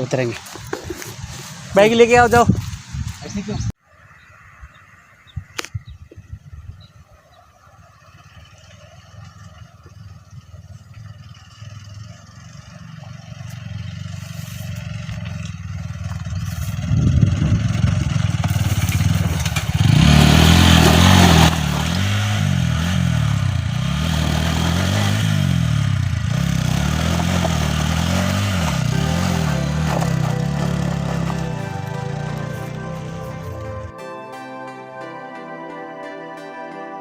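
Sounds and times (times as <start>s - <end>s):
motorcycle engine revving: 11.0s - 33.9s.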